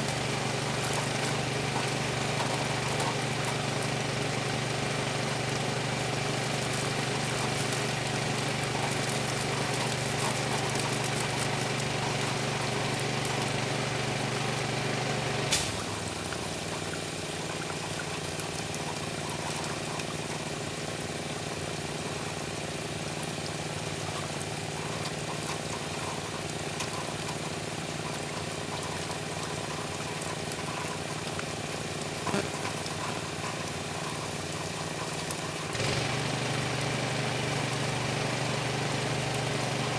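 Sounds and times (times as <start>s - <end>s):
pressure washer engine running: 0.0s - 16.5s, 27.4s - 39.9s.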